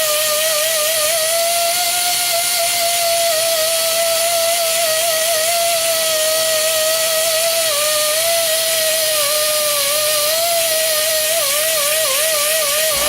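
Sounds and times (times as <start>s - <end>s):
die grinder whining on metal: 11.8s - 13.0s.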